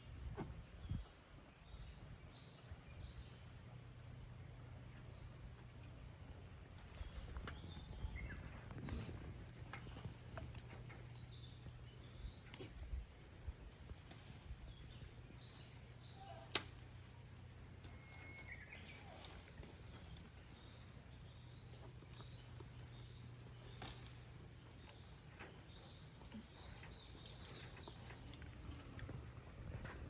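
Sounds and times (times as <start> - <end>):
low steady hum: 0.0 - 30.0
faint bird chirps: 14.7 - 16.5, 17.9 - 20.8.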